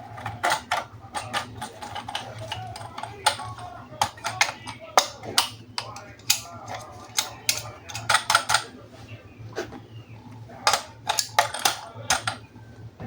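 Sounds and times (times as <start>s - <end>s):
plastic toy parts clicking: 0.1s - 8.7s, 10.6s - 12.4s.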